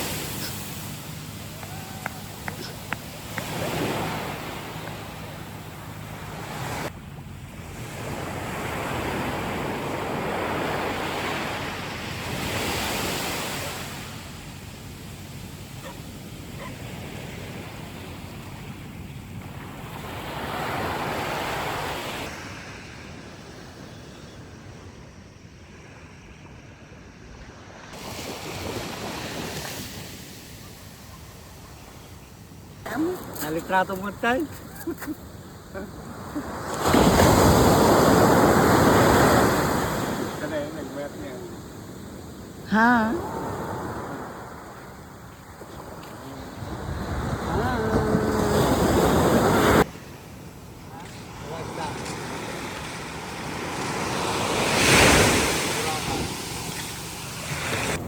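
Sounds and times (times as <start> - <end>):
ocean waves washing in: 0.0 - 58.0
wind buffeting microphone: 44.0 - 49.9.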